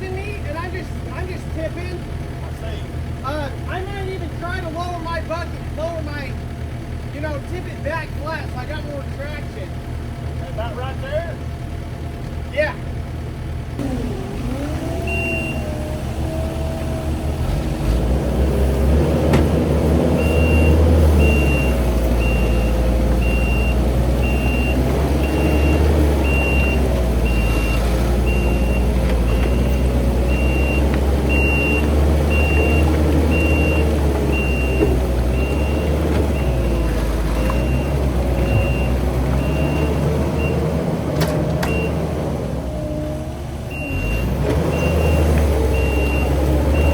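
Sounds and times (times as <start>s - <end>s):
skid steer engine running hard: 0.0s - 46.9s
reversing alarm beeping: 14.9s - 16.6s, 20.2s - 40.7s, 43.7s - 46.9s.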